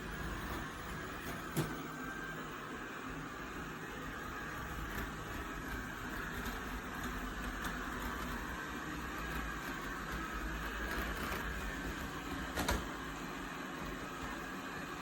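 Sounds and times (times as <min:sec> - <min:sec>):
robot vacuum whirring: 0:00.0 - 0:15.0.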